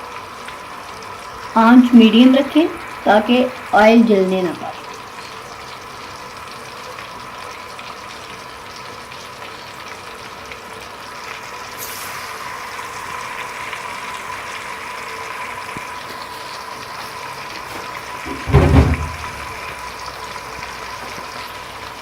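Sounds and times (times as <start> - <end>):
chicken sizzling in hot oil: 0.0 - 22.0.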